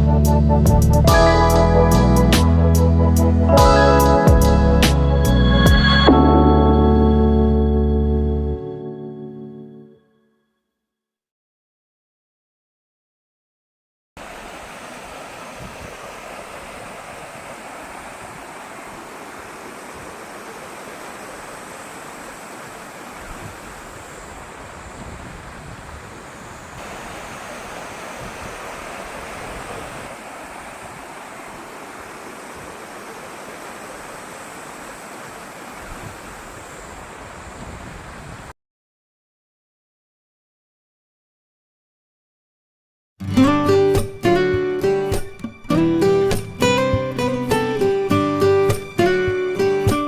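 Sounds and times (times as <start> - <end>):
stream rushing over rocks: 14.2 - 38.0
wind rumbling on microphone: 14.3 - 38.5.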